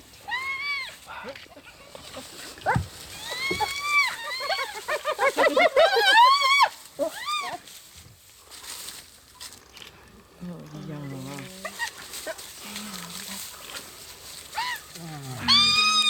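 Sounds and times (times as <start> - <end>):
high arching animal calls: 14.4 - 16.0.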